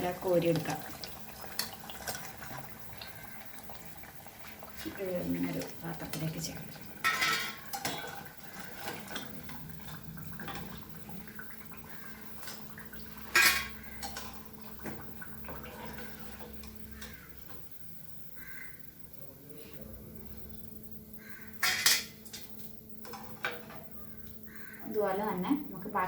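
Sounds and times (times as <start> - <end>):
spoon tapping frying pan: 5.4 - 17.7
metal utensils clinking and scraping: 6.0 - 10.8, 12.4 - 14.5, 21.6 - 23.9
metal clank: 21.6 - 24.0.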